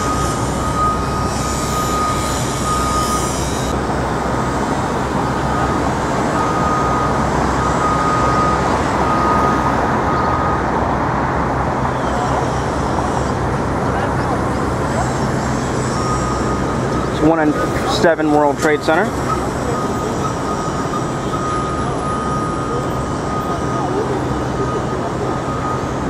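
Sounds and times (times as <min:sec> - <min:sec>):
high electronic beeps: 0:00.0 - 0:03.8, 0:15.2 - 0:26.0
street traffic: 0:00.0 - 0:26.0.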